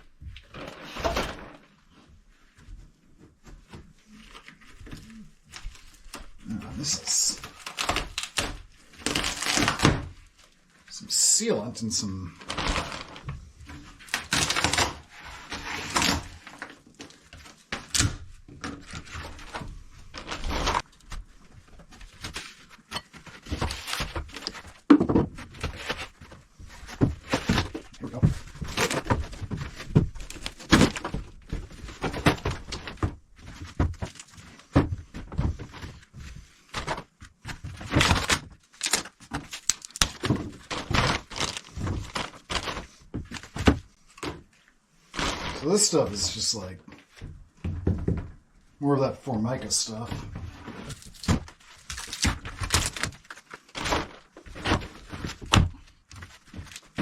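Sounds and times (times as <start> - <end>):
knocks and thunks on wood: 23.5 - 25.8, 26.9 - 35.9, 47.2 - 48.4.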